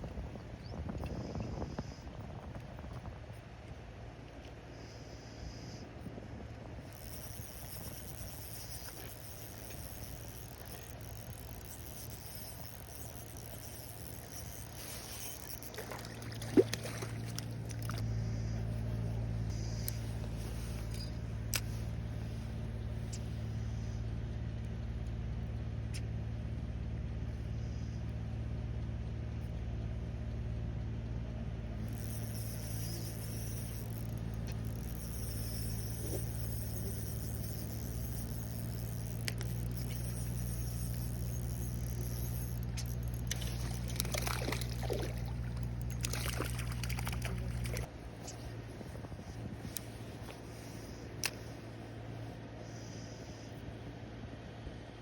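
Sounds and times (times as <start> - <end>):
low mechanical hum: 0.0 - 55.0
sharp clicks: 7.0 - 18.1, 31.9 - 47.9.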